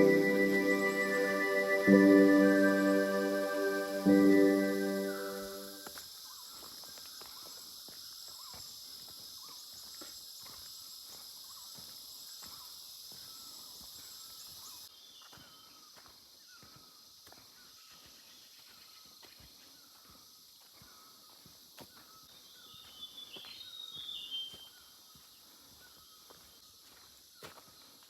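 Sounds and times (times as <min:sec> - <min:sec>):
high insect drone: 0:00.0 - 0:14.9
footsteps on a trail: 0:05.7 - 0:28.0.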